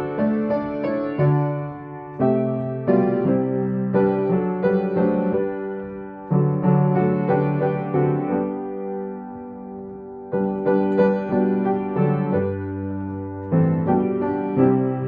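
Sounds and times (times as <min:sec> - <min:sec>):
piano playing slow hymn chords: 0:00.0 - 0:15.0.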